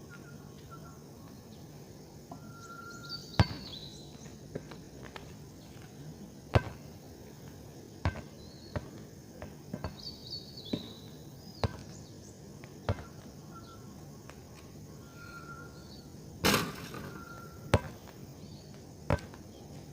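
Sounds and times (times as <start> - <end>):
bird chirps and trills: 2.4 - 4.3, 17.1 - 18.8.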